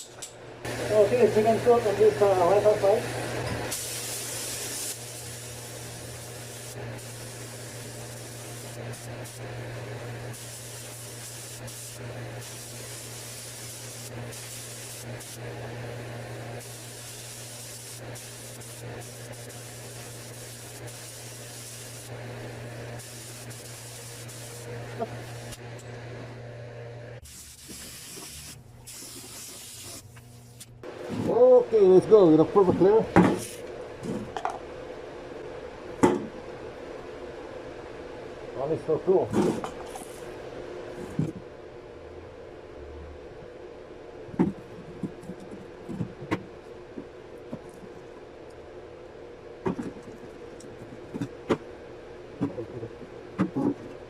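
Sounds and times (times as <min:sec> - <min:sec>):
steady low hum: 0:00.0 - 0:27.2, 0:30.0 - 0:54.0
paint spray gun hissing: 0:03.7 - 0:25.6, 0:27.2 - 0:30.7.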